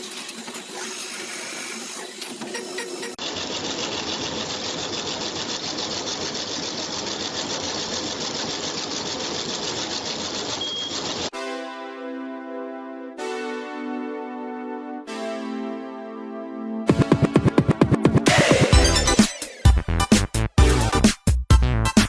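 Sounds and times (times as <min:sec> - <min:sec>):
machine tool cutting metal: 0:00.0 - 0:11.3
keyboard music: 0:11.3 - 0:22.0.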